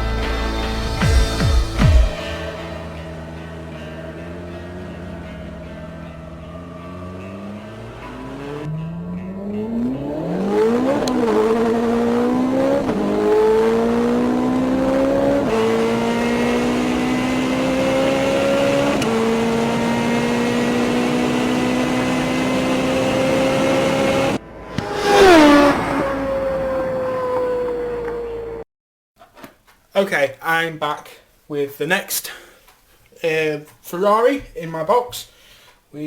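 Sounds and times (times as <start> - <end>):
sports car engine accelerating: 0.0 - 28.6.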